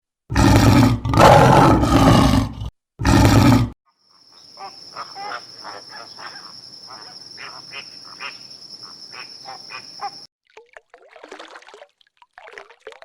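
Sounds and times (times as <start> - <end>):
large animal roaring: 0.3 - 3.8
high insect drone: 4.0 - 10.3.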